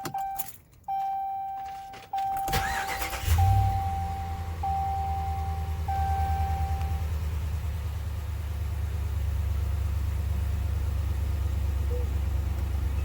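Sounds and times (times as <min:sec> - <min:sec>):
dashboard warning chime: 0:00.0 - 0:07.2, 0:11.9 - 0:12.2
engine cranking and idling: 0:02.4 - 0:13.0.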